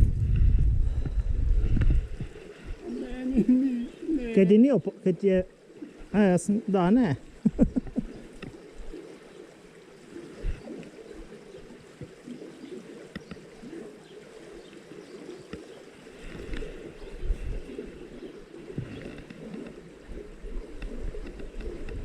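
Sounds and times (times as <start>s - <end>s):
short low thumps: 0.0s - 2.4s
stream gurgling over stones: 0.0s - 22.0s.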